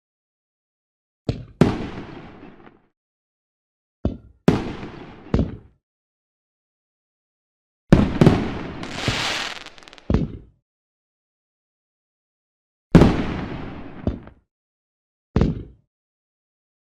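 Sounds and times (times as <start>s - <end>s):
fireworks bursting: 8.3s - 10.2s
hissing crackle: 8.8s - 10.1s.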